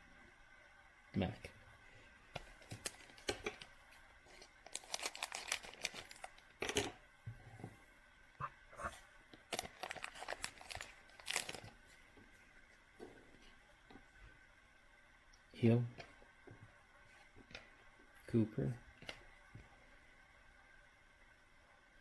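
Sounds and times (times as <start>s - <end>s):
trading cards rustling and scraping: 4.4s - 6.3s.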